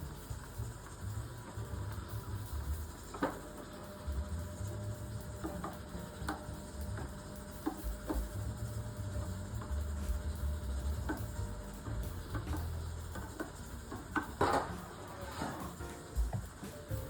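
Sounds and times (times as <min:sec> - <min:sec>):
utensil stirring in a bowl: 0:07.0 - 0:17.0.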